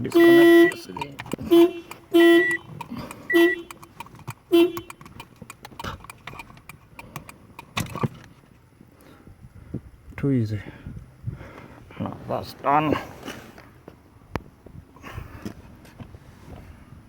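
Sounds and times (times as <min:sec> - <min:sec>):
car alarm tones: 0:00.0 - 0:03.9, 0:04.5 - 0:05.2
faint clicks and knocks: 0:00.7 - 0:08.6.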